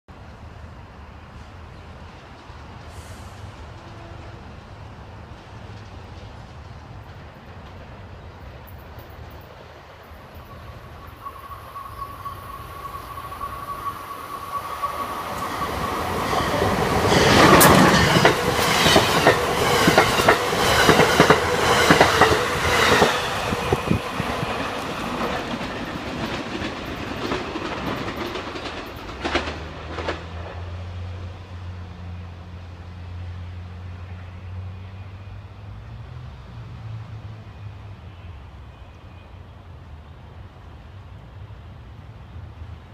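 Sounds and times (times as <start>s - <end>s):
train passing at speed: 0.1s - 42.9s
wheels clacking over rail joints: 10.4s - 30.8s.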